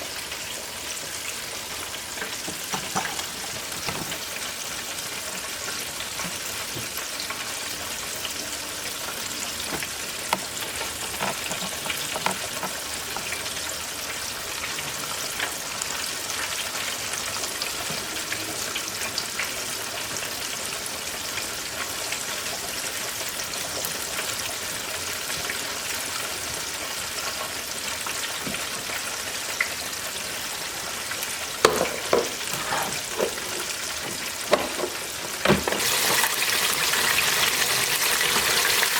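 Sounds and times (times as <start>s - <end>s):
chicken sizzling in hot oil: 0.0s - 38.9s.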